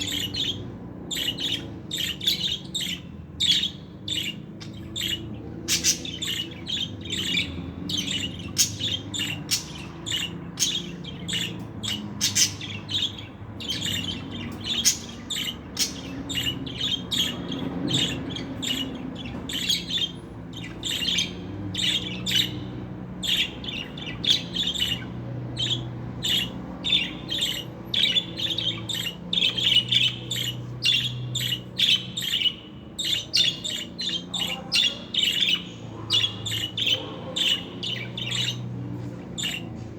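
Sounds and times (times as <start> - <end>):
budgerigar chirping: 0.0 - 39.8.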